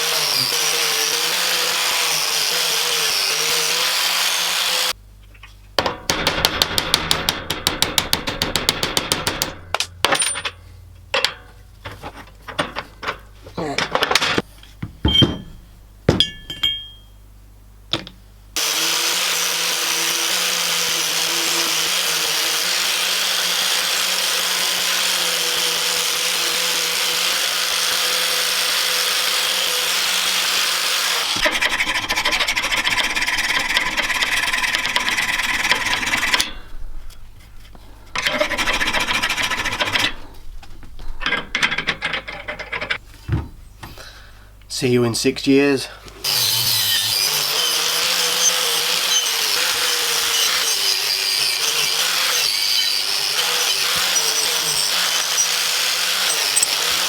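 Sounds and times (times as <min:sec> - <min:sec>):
power tool grinding metal: 0:00.0 - 0:05.0, 0:18.6 - 0:36.7, 0:38.2 - 0:40.3, 0:46.2 - 0:57.0.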